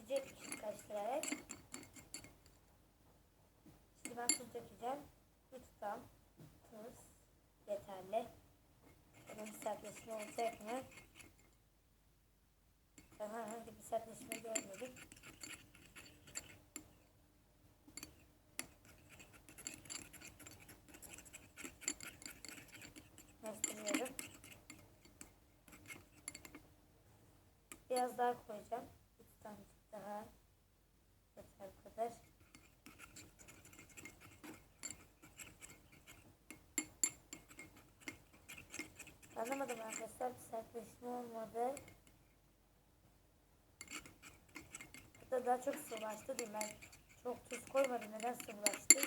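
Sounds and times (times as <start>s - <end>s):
teaspoon scraping a plate: 0.0s - 2.6s, 9.1s - 11.6s, 13.0s - 17.0s, 17.9s - 26.7s, 32.2s - 40.3s, 41.7s - 42.2s, 43.8s - 49.0s
spoon clicking against dish: 0.1s - 2.4s, 4.1s - 4.5s, 9.2s - 11.5s, 13.0s - 17.0s, 17.9s - 26.6s, 32.4s - 40.1s, 41.8s - 42.2s, 43.8s - 49.0s.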